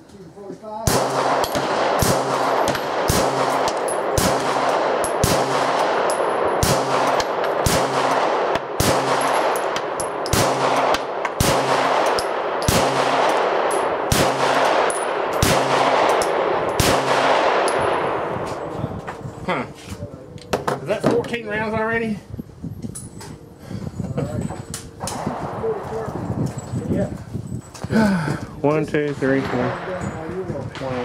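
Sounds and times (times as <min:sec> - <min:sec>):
pistol shots: 0:00.9 - 0:18.7.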